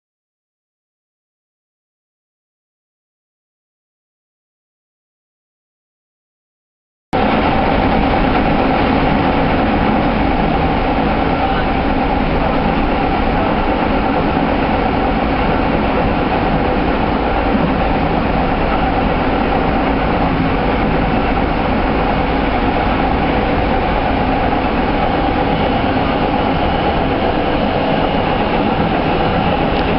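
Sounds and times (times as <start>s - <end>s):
electric train running past: 7.2s - 29.9s.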